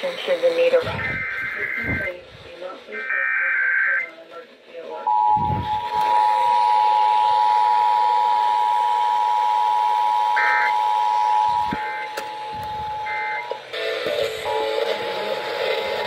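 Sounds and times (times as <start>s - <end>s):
warbling digital data bursts: 0.8s - 2.2s
two-tone attention signal beep: 5.1s - 13.5s.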